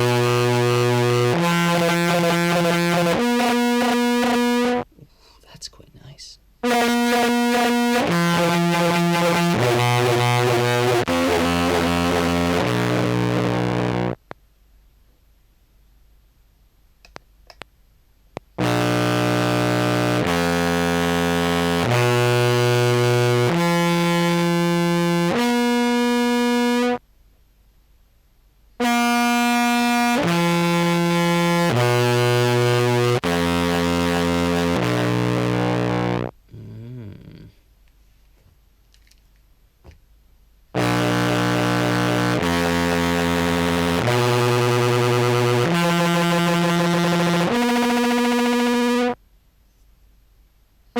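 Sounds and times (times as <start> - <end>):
distorted clarinet notes: 0.0 - 4.9, 6.6 - 14.3, 18.6 - 27.0, 28.8 - 37.2, 40.8 - 49.2.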